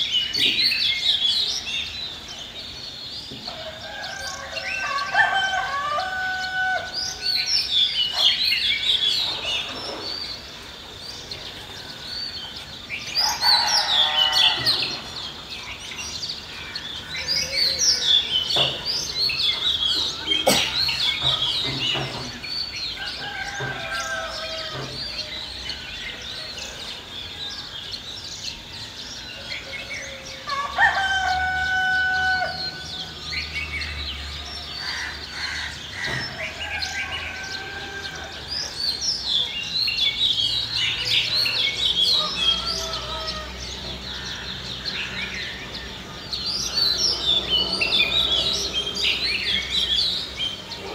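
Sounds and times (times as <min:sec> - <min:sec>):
small birds chirping: 0:00.0 - 0:31.4, 0:32.4 - 0:50.9
rooster crowing: 0:03.6 - 0:07.4, 0:13.2 - 0:15.2, 0:23.0 - 0:25.5, 0:29.4 - 0:33.1, 0:35.7 - 0:38.7, 0:41.4 - 0:43.8.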